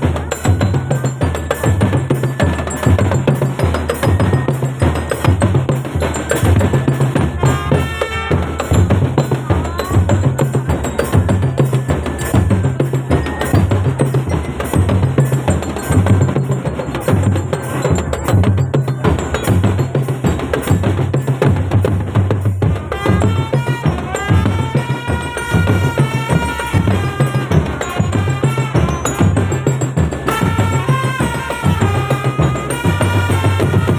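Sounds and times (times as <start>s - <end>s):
bass drums beating: 0.0s - 33.9s.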